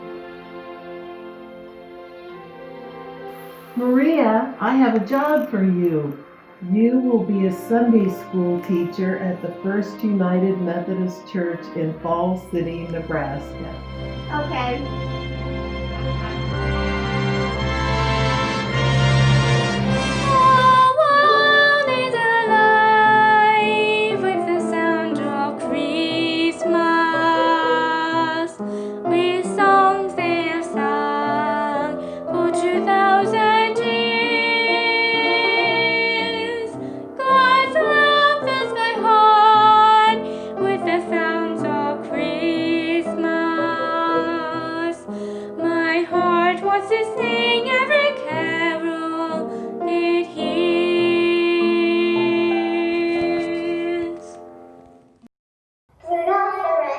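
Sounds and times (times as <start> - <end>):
instrumental accompaniment: 0.0 - 20.8
woman singing: 3.8 - 13.8, 20.5 - 54.4.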